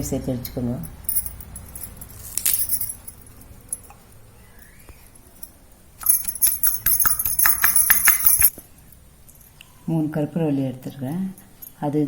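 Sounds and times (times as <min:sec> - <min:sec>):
pestle striking mortar: 0:06.8 - 0:08.5.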